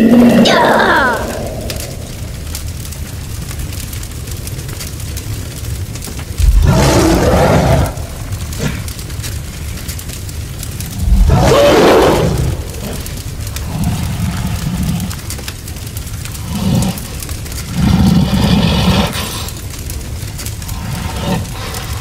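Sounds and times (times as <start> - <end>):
loud roars: 0.0 - 2.3, 6.4 - 8.9, 10.8 - 15.2, 16.3 - 19.4, 20.6 - 22.0
steady low rumble: 0.0 - 22.0.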